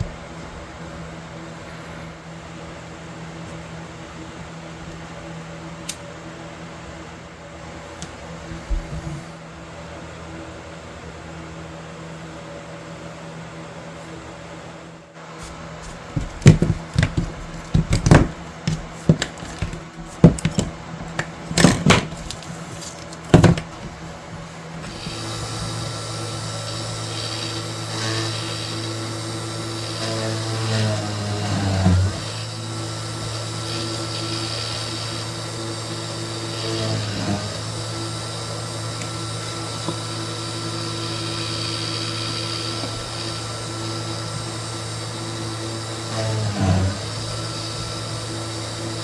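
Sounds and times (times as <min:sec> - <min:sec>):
loud irregular knocks and scrapes: 0:15.8 - 0:24.1
small power tool running: 0:16.2 - 0:49.0.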